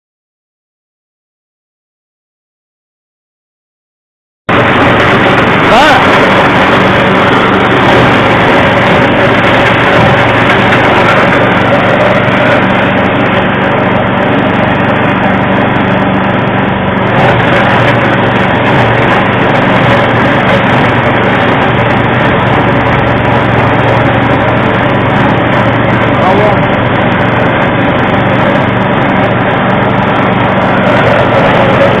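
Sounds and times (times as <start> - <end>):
feed chopper machine running: 4.5 - 32.0.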